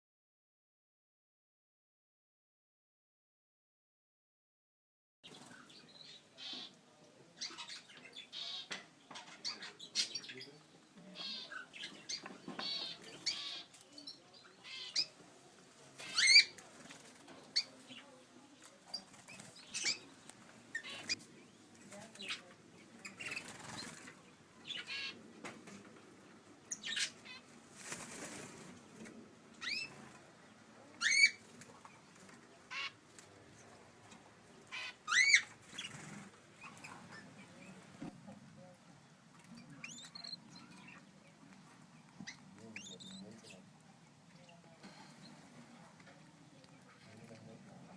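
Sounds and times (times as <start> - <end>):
cage birds chirping and chattering: 5.2 - 47.9
wings fluttering: 18.9 - 21.2, 23.0 - 24.2, 26.9 - 30.3, 35.1 - 38.0.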